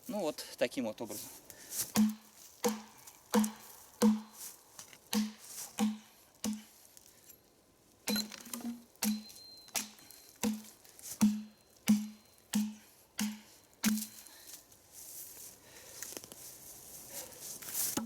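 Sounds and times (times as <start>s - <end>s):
hatchet chopping log: 1.9s - 4.4s, 5.1s - 6.8s, 8.1s - 14.2s.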